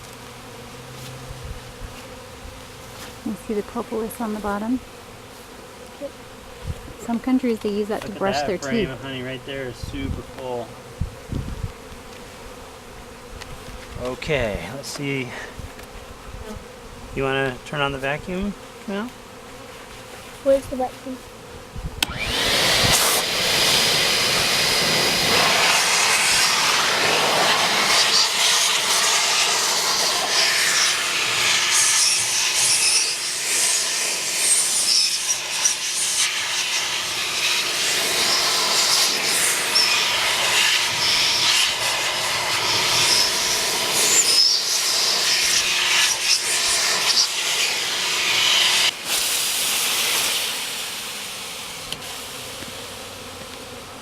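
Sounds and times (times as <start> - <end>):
vacuum cleaner blowing: 21.8 - 53.2.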